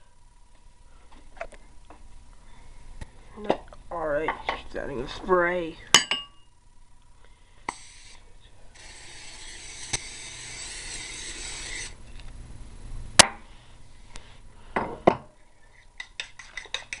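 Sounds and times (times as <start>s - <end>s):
aerosol spray hissing: 7.7s - 8.2s.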